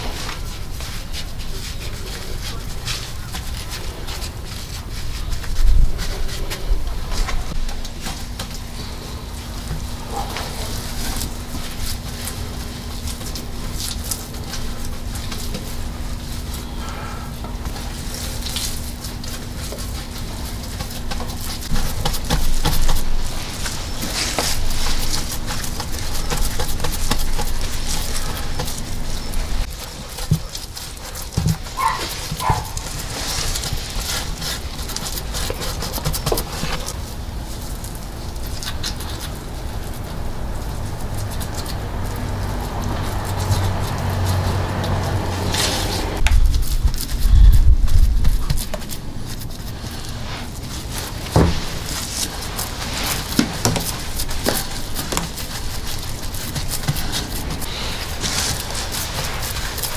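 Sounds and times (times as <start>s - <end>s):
wind buffeting microphone: 0.0s - 8.0s, 41.8s - 49.3s
animal calls: 31.7s - 33.3s.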